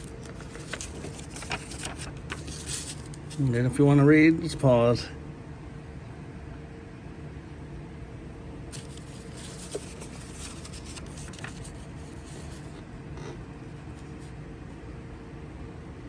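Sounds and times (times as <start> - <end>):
paper rustling: 0.0 - 3.5, 8.7 - 12.8
steady background hum: 0.0 - 16.0.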